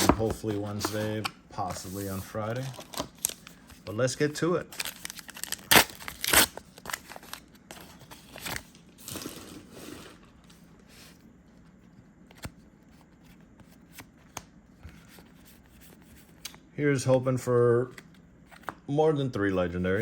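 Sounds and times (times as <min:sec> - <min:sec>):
packaging ripping: 0:04.7 - 0:07.4
packaging crinkling: 0:04.7 - 0:10.1.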